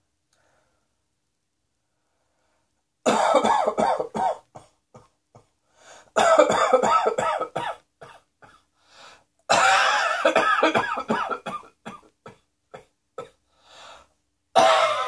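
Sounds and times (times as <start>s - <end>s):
person coughing: 3.1s - 5.5s, 6.2s - 8.6s, 9.5s - 13.4s, 14.6s - 15.0s.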